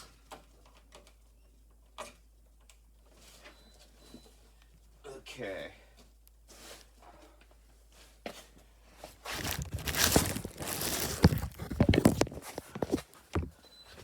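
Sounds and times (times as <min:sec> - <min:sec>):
rustling and scraping on microphone: 0:09.1 - 0:13.6.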